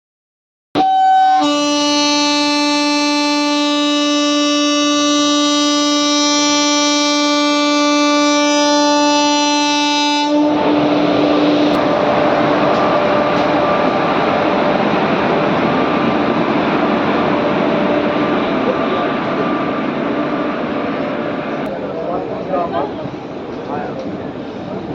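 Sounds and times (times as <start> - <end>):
train horn blast: 0.8 - 14.9
train running noise: 1.0 - 24.9.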